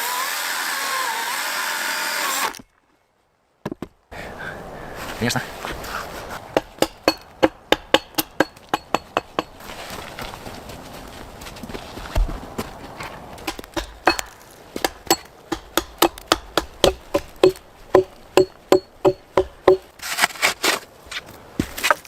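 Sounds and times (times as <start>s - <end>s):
scraping or crunching: 9.2s - 15.1s, 19.8s - 22.0s
rapid sharp knocking: 13.5s - 19.8s.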